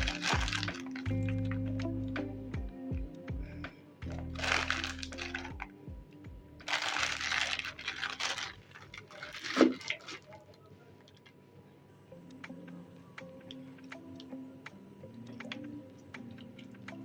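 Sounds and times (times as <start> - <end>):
slime squished crackling: 0.0 - 1.9, 4.0 - 5.7, 6.6 - 10.4.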